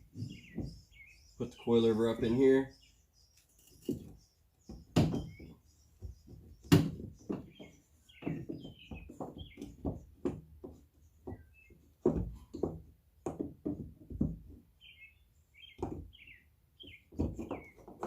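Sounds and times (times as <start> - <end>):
metal clunks and knocks: 4.7 - 14.7.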